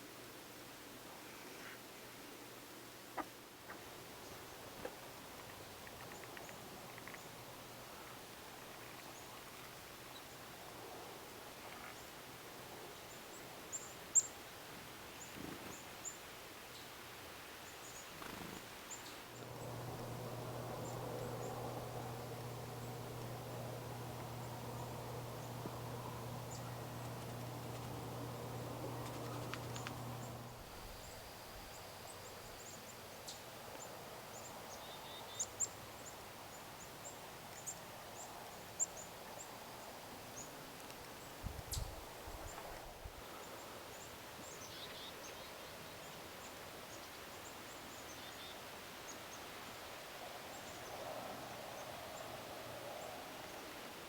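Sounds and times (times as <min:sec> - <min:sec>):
small birds chirping: 0:17.6 - 0:36.2
outdoor ambience: 0:18.2 - 0:45.5
low steady hum: 0:19.2 - 0:32.8.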